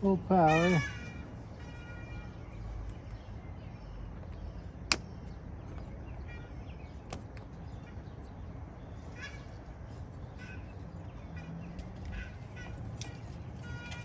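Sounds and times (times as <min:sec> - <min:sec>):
sharp clicks: 0:04.2 - 0:05.4.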